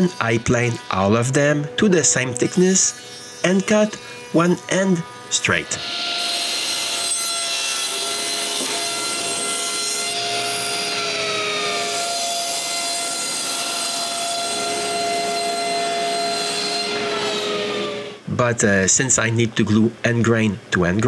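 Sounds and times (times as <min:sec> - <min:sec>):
thickness planer cutting boards: 0:00.0 - 0:18.2.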